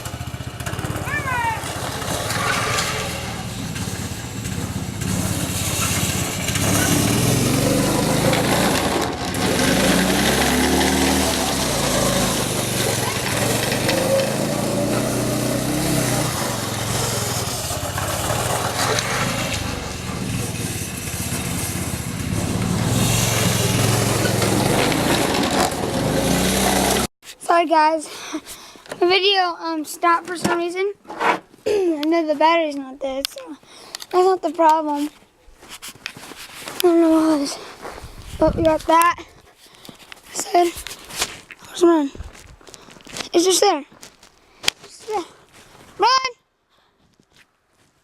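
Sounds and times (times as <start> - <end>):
snowmobile engine revving: 0.0 - 27.1.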